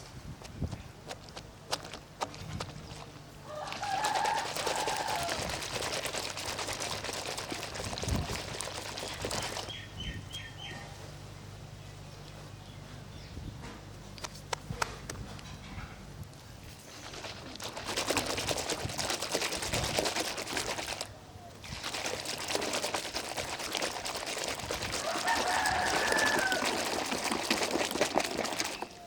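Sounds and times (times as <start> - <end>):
water rushing and splashing: 3.5 - 9.7, 21.7 - 29.0
bird chirps: 9.6 - 11.0.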